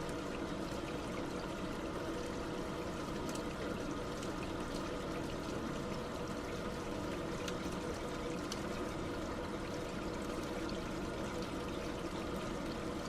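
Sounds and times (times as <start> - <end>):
liquid pouring: 0.0 - 13.0
faint splashy ticks: 3.1 - 5.5, 7.4 - 8.8.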